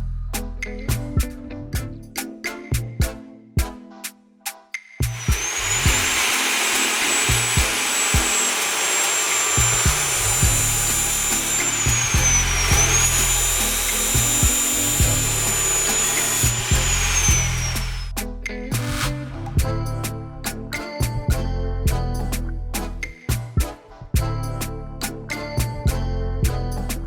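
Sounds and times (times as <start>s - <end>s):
background music with a beat: 0.0s - 6.0s, 11.6s - 15.3s, 18.1s - 27.0s
metal cut-off saw whining: 5.1s - 18.1s.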